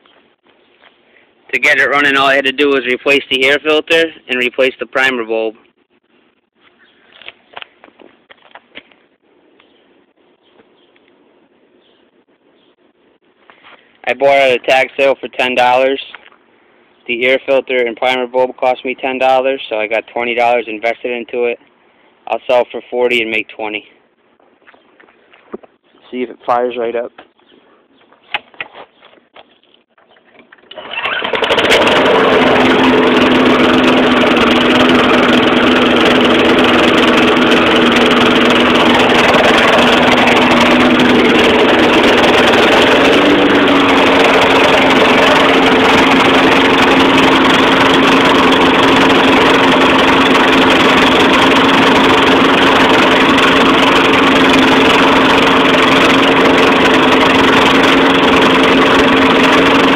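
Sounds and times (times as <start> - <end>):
lawn mower engine running: 1.4 - 8.0, 30.0 - 59.9.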